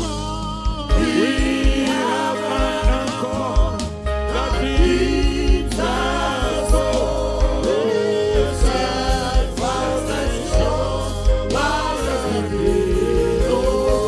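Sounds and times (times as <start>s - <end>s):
voices singing gospel music: 0.0s - 14.0s
drum and bass thumps: 8.4s - 14.0s.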